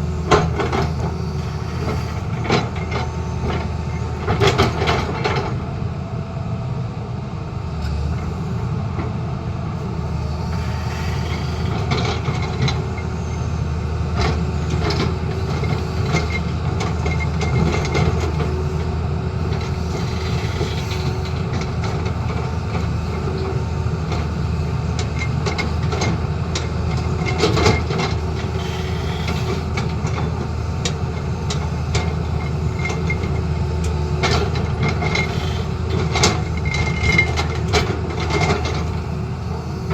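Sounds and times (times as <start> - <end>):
excavator diesel engine running: 0.0 - 39.9
machine clanks and knocks: 14.1 - 18.8, 19.5 - 39.1.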